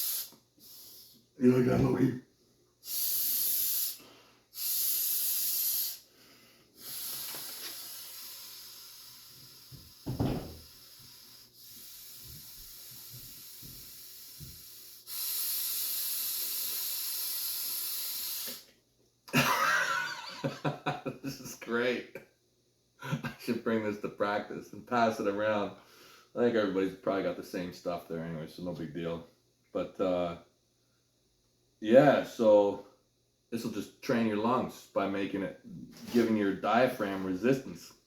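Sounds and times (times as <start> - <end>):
airy breathing hiss through valve: 0.0 - 1.4, 2.8 - 18.7.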